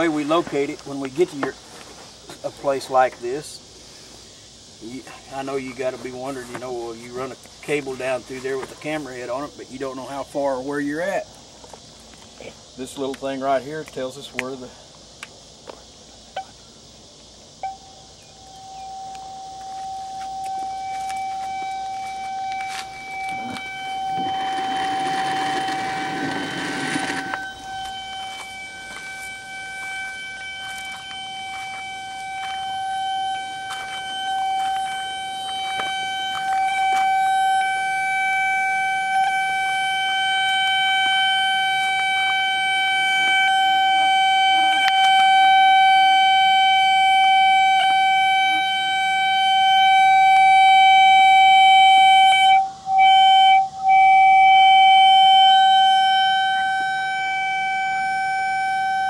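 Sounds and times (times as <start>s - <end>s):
high flute-like locator tone: 17.6s - 59.0s.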